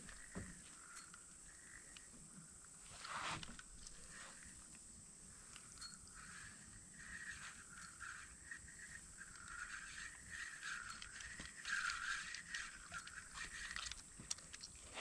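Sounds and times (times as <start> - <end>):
fishing reel gear whir: 5.3 - 14.8
fishing reel clicks: 5.5 - 14.7.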